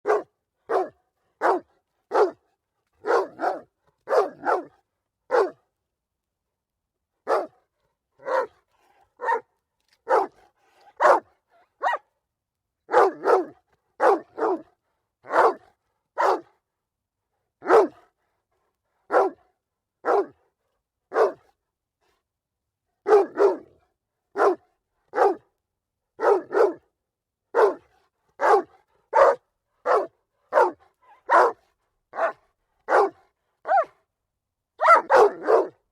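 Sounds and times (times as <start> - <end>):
dog barking: 0.0 - 2.4, 3.0 - 5.6, 7.2 - 7.6, 8.2 - 12.1, 12.9 - 16.6, 17.6 - 18.2, 19.1 - 20.4, 21.1 - 21.5, 23.0 - 25.4, 26.2 - 26.8, 27.5 - 34.0, 34.8 - 35.9.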